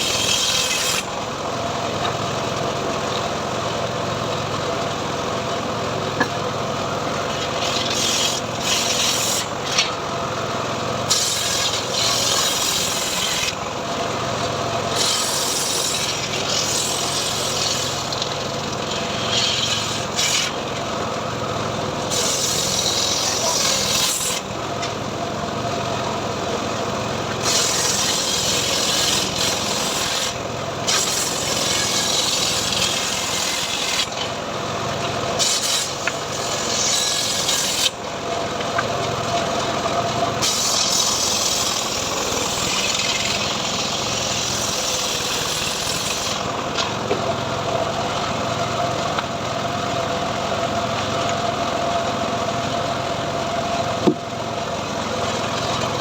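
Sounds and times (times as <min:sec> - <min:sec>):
saw cutting wood hiss: 0:00.0 - 0:01.2, 0:07.6 - 0:09.8, 0:11.0 - 0:13.6, 0:14.9 - 0:18.3, 0:19.1 - 0:20.6, 0:22.0 - 0:24.5, 0:27.4 - 0:34.2, 0:35.4 - 0:38.0, 0:40.4 - 0:46.6
sawmill engine running: 0:00.0 - 0:56.0.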